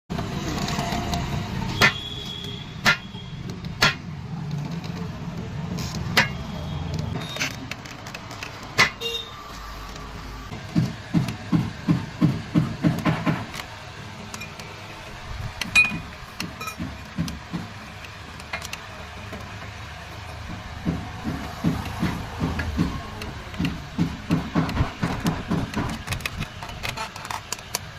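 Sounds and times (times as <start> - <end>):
sharp metal clicks and knocks: 0.1 - 9.2, 15.5 - 19.8, 20.4 - 27.9.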